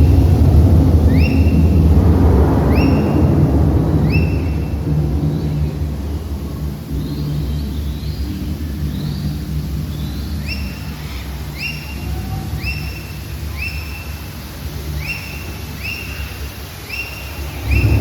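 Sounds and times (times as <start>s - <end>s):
low steady rumble: 0.0s - 16.0s, 17.3s - 18.0s
bird whistled call: 1.1s - 1.8s, 2.7s - 3.2s, 4.0s - 4.7s, 10.0s - 14.3s, 14.9s - 18.0s.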